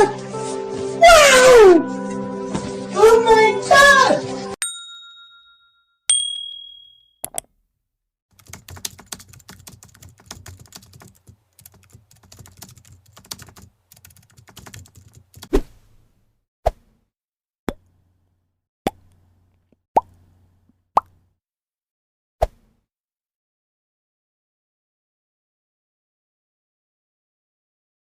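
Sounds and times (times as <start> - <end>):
ringing dings: 4.6 - 7.3
keyboard typing: 8.4 - 15.5.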